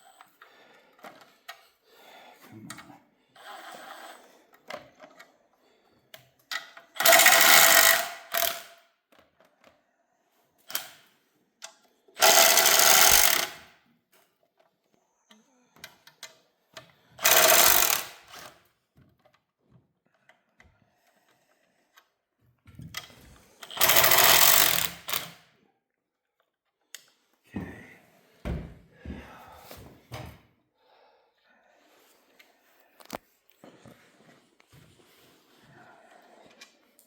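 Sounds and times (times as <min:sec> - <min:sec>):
impact wrench running: 0:07.0 - 0:08.7, 0:12.2 - 0:13.7, 0:17.2 - 0:18.5, 0:23.6 - 0:25.4.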